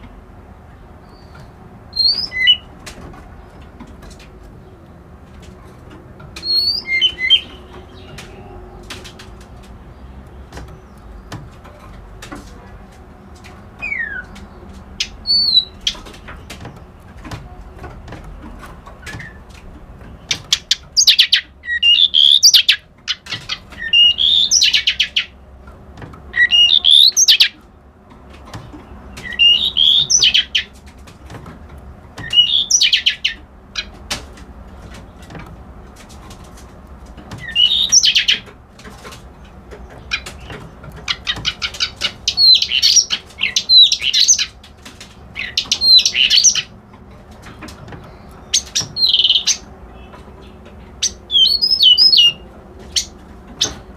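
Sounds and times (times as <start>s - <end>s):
songbird chattering and whistling: 1.0s - 2.7s, 6.4s - 8.9s, 13.8s - 16.9s, 20.1s - 25.4s, 26.3s - 27.6s, 28.9s - 30.7s, 32.2s - 34.0s, 37.4s - 38.5s, 39.9s - 44.6s, 45.4s - 46.8s, 48.1s - 53.8s.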